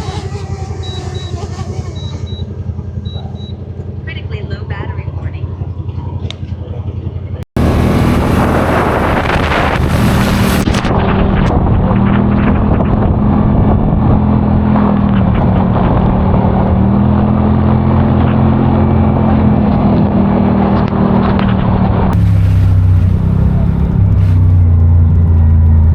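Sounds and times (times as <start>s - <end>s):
utv engine running: 0.0s - 25.9s
wind: 0.0s - 25.9s
tyres rolling noise: 7.6s - 10.9s, 22.1s - 25.9s.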